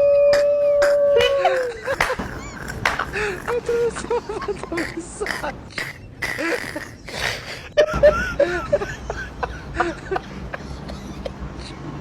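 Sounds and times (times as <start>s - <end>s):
person making wordless sounds: 0.3s - 7.6s.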